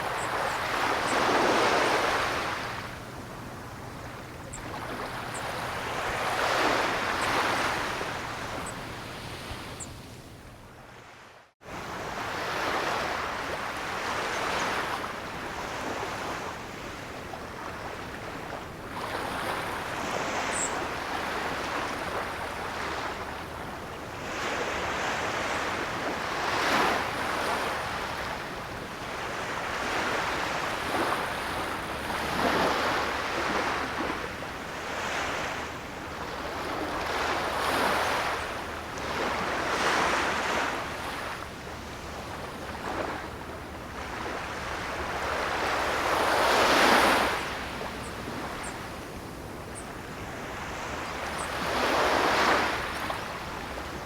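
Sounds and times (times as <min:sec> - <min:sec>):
ocean surf breaking on shore: 0:29.2 - 0:49.4, 0:50.0 - 0:54.0.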